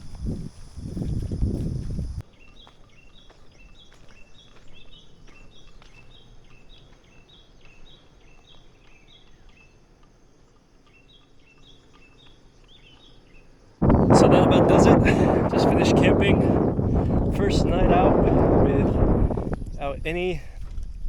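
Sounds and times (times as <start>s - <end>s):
loud low rustle: 13.8s - 21.0s.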